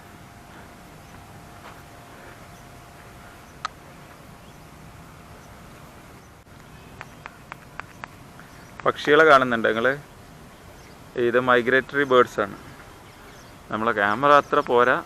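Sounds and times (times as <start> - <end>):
outdoor background hum: 0.0 - 15.0
sharp clicks: 6.5 - 8.9.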